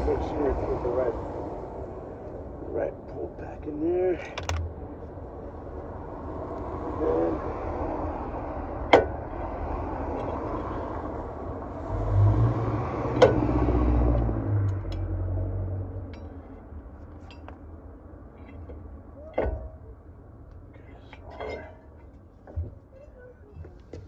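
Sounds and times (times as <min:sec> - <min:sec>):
metal parts clinking: 0:04.3 - 0:04.6.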